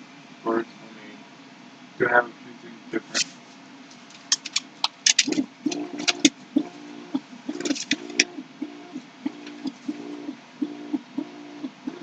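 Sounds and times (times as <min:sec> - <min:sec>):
sharp clicks: 0:04.0 - 0:06.7, 0:07.5 - 0:08.3.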